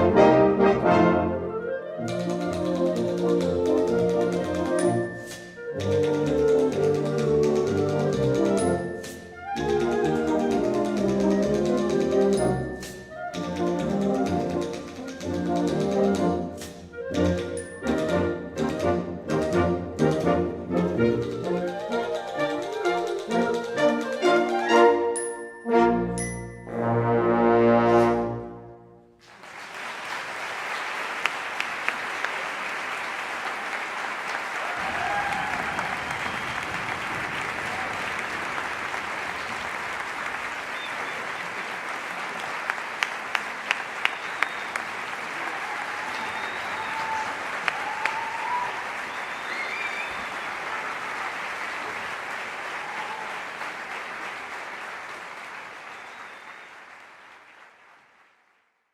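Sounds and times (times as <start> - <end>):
audience applauding: 2.0 - 16.2, 29.2 - 58.7
single claps: 29.2 - 57.8.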